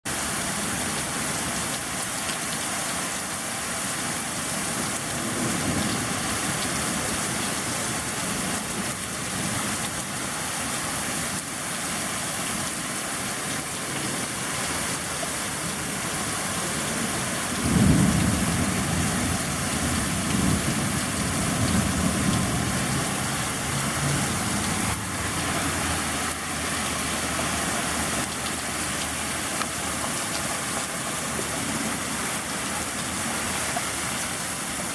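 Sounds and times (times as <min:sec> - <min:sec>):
heavy rain pouring: 0:00.1 - 0:34.9
thunder rumbling: 0:17.4 - 0:25.5.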